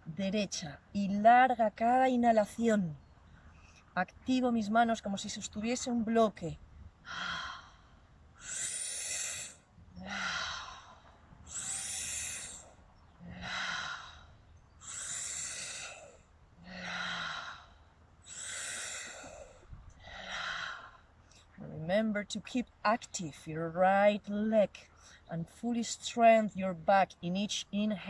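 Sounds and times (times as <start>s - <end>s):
woman breathing through mouth: 7.1s - 21.0s.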